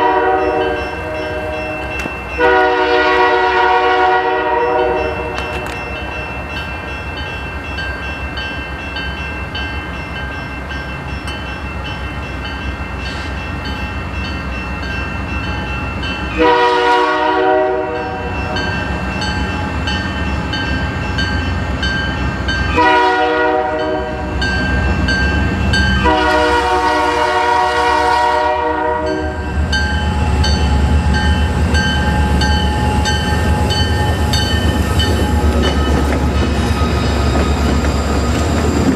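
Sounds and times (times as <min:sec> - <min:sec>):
locomotive air horn blasts: 0:00.0 - 0:05.8, 0:16.3 - 0:18.3, 0:22.7 - 0:24.4, 0:26.0 - 0:29.4
train engine and wheels rumbling: 0:00.0 - 0:38.9.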